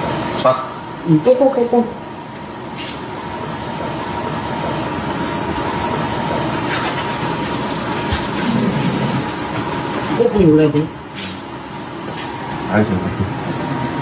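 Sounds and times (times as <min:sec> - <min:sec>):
beef sizzling in a hot pan: 0:04.5 - 0:09.3.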